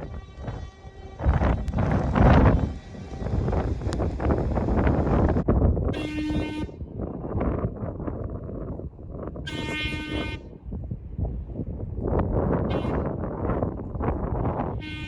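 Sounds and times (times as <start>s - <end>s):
wind noise on microphone: 0.0s - 15.0s
locomotive air horn blasts: 5.9s - 6.8s, 9.5s - 10.5s, 12.7s - 13.1s, 14.7s - 15.0s.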